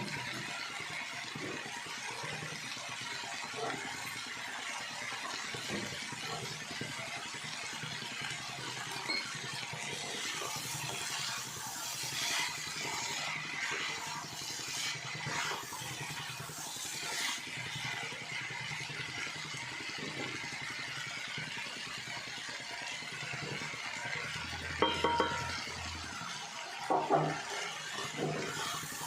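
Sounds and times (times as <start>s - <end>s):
food sizzling in a pan: 3.5s - 21.0s, 23.1s - 29.0s
metal spoon scraping a pan: 11.4s - 15.8s
spoon clanking on a pan: 24.8s - 25.7s.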